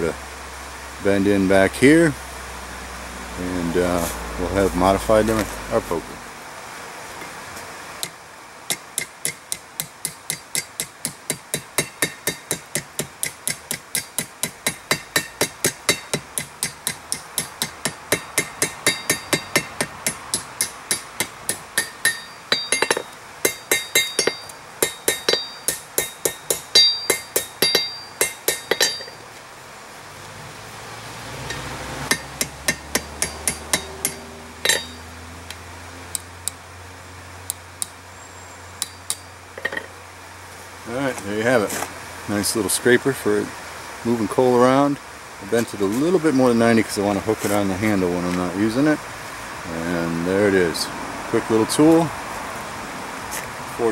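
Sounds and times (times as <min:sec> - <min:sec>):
low steady hum: 0:07.2 - 0:30.0, 0:31.5 - 0:41.0
hammer striking steel on anvil: 0:08.0 - 0:29.2, 0:31.5 - 0:35.1, 0:38.8 - 0:39.9.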